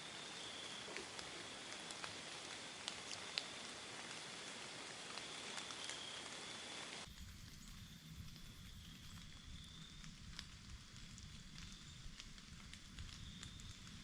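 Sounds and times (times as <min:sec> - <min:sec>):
soft hiss: 0:00.0 - 0:14.0
high-pitched insect drone: 0:07.1 - 0:10.0.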